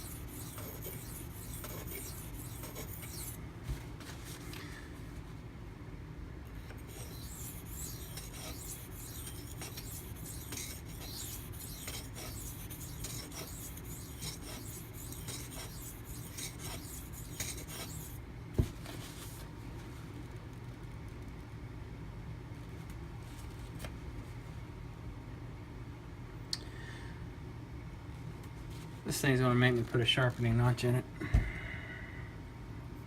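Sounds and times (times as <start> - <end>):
knife scraping on sharpening stone: 0.0 - 3.4, 6.9 - 18.2.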